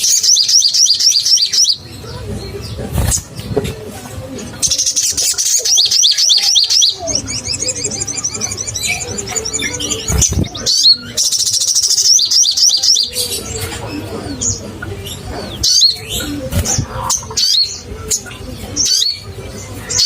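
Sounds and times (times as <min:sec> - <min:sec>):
sunbird singing high trills: 0:04.7 - 0:13.4.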